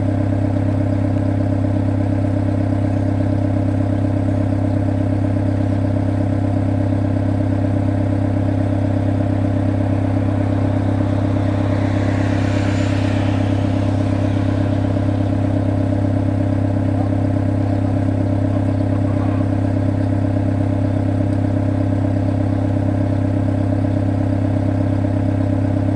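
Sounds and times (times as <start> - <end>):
brief hissy noise: 7.0 - 17.0.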